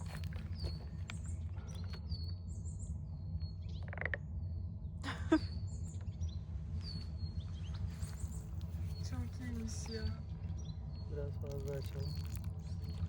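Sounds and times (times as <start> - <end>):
steady low hum: 0.0 - 13.0
small bird chirping: 5.5 - 13.0.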